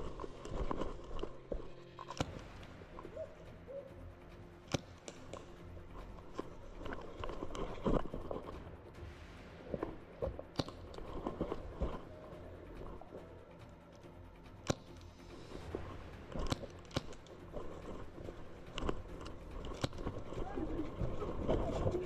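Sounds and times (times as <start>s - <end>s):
sharp clicks: 4.6s - 5.6s.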